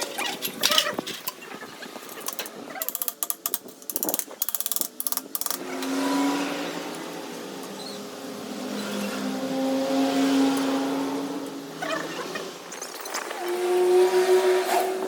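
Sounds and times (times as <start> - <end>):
rapid clicking and rattling: 2.0 - 5.6.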